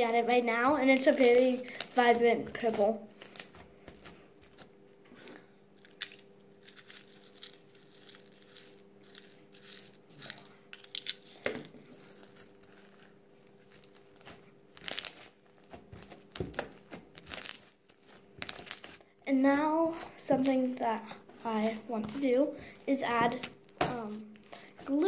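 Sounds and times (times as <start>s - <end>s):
slime squishing and crackling: 0.0s - 4.7s, 6.6s - 25.0s
faint steady hum: 0.0s - 25.0s.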